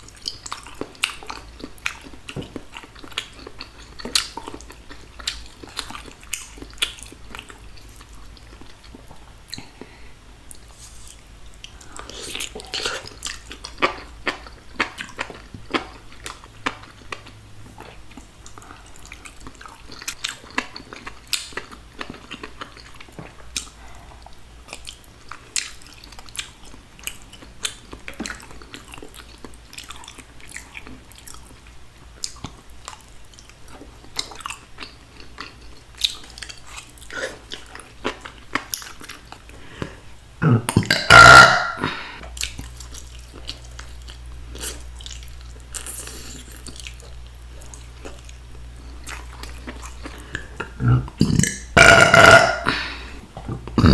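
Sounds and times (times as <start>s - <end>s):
chewing and mouth smacking: 0.0s - 40.0s, 42.2s - 52.8s
person burping: 40.4s - 42.2s, 50.6s - 53.9s.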